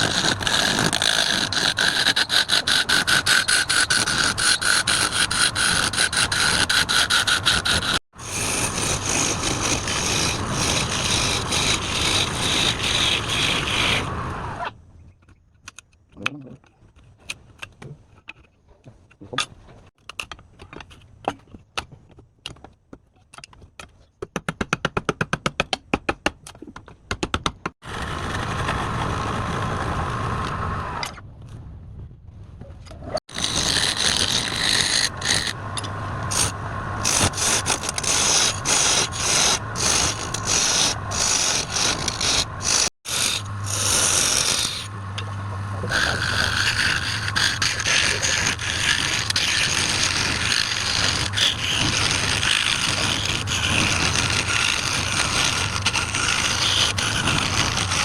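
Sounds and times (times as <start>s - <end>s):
lathe tool cutting spinning wood: 0.0s - 14.6s, 33.3s - 58.0s.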